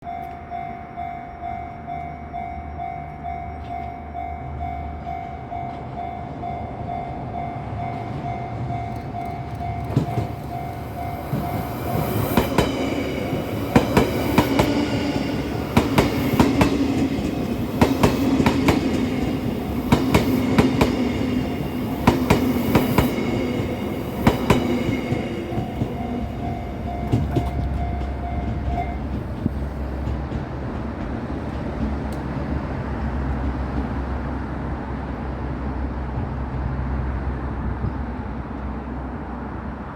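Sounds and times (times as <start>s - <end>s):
level crossing warning bell: 0.0s - 29.5s
electric train passing: 0.0s - 39.9s
train wheels clacking over rail joints: 8.9s - 34.4s.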